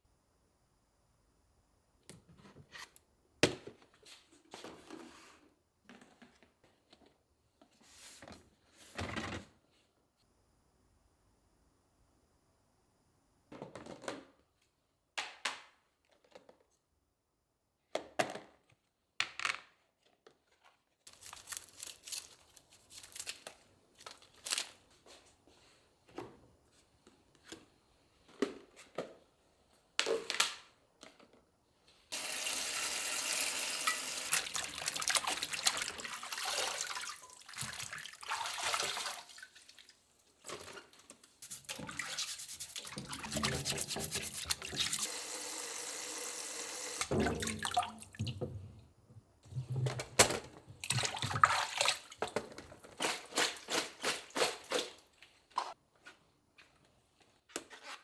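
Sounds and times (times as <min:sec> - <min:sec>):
tap water running into sink: 0:32.2 - 0:39.4, 0:41.7 - 0:48.6.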